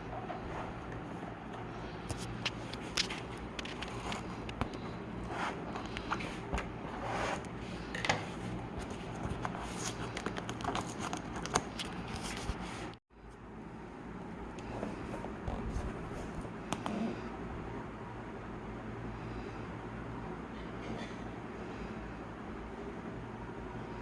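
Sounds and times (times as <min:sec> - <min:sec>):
packaging rustling and clicking: 0:08.8 - 0:12.6.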